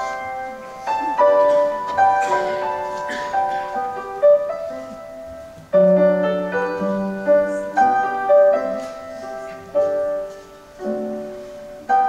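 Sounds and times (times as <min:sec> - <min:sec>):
slow piano chords: 0:00.0 - 0:12.0.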